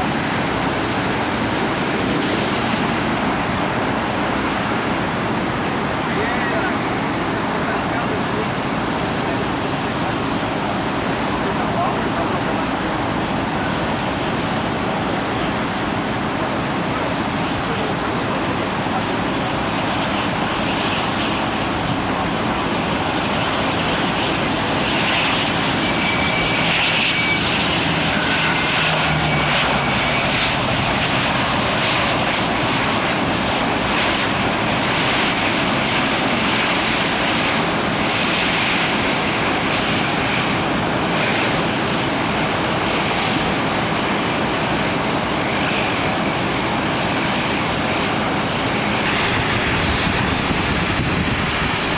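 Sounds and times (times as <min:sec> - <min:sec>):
airliner engines running: 0:00.0 - 0:51.9
heavy rain hissing: 0:49.1 - 0:51.9.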